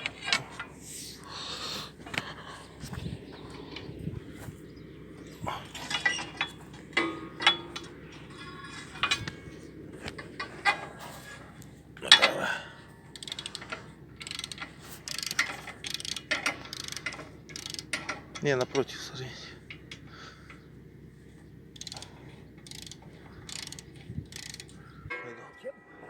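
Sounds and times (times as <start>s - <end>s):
metal tools clinking and clanking: 5.4s - 12.5s, 13.2s - 19.1s.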